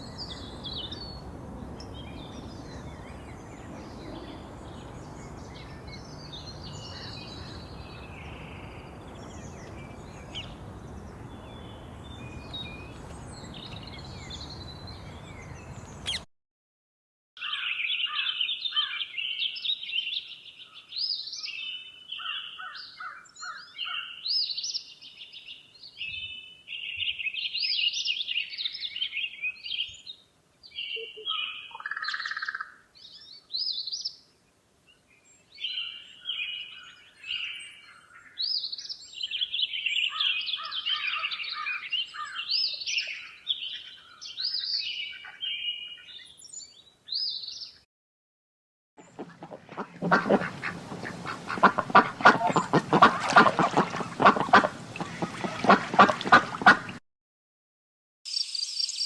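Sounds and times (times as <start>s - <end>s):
songbirds chirping and trilling: 0.0s - 16.3s, 17.4s - 47.8s, 49.0s - 56.9s, 58.3s - 59.0s.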